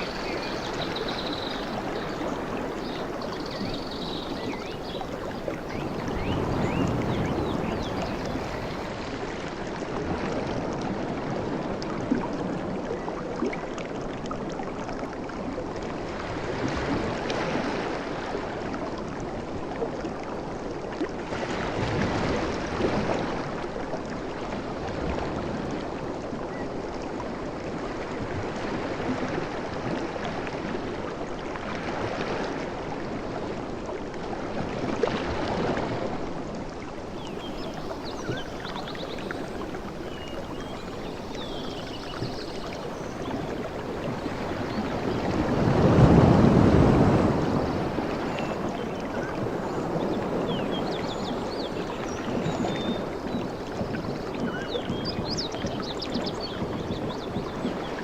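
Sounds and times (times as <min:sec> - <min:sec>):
waves washing onto beach: 0:00.0 - 0:58.0
small sharp water splashes: 0:37.0 - 0:58.0.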